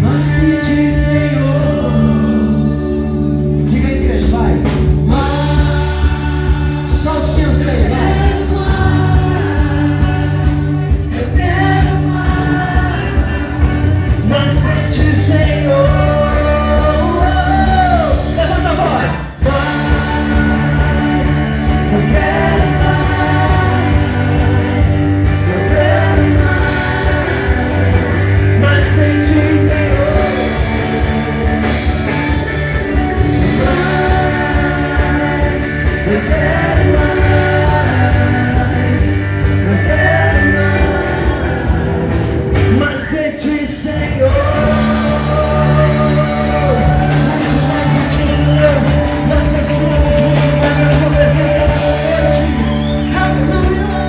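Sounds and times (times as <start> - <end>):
lead singer singing: 0.0 - 54.0
live worship band: 0.0 - 54.0
regular drum beat: 0.0 - 54.0
steady bass line: 0.0 - 54.0.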